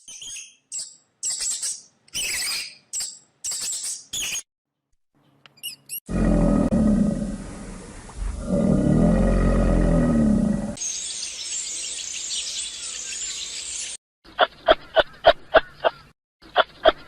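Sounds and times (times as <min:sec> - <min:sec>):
loud low animal call: 0:06.1 - 0:10.8.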